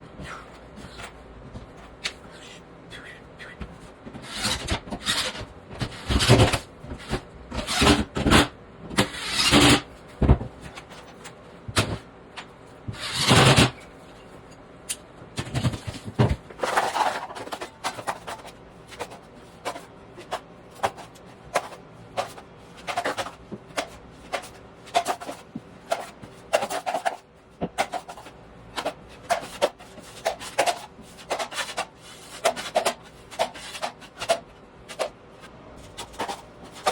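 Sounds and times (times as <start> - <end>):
hand tools scraping drywall: 4.2 - 6.6, 27.8 - 35.1.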